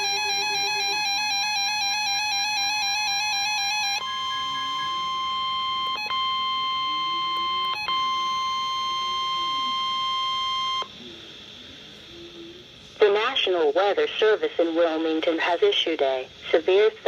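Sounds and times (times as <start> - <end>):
steady warning alert tone: 0.0 - 10.9
warbling alarm tone: 0.0 - 10.9.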